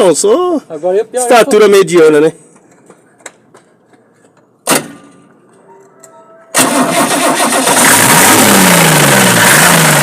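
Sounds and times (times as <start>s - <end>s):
diesel engine cranking: 6.5s - 10.0s
engine running loudly: 6.6s - 10.0s.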